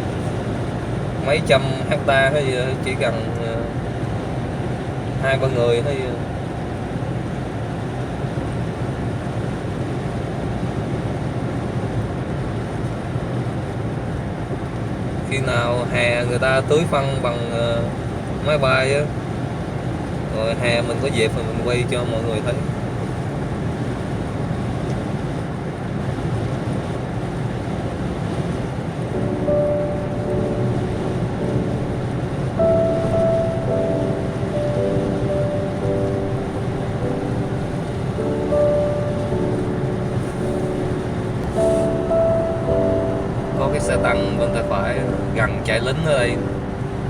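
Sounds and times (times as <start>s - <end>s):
car road and engine noise: 0.0s - 47.0s
faint steady tone: 29.1s - 47.0s.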